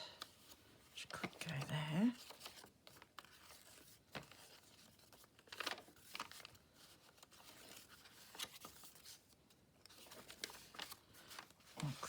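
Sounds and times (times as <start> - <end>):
paper sheets rustling: 0.2 - 12.0.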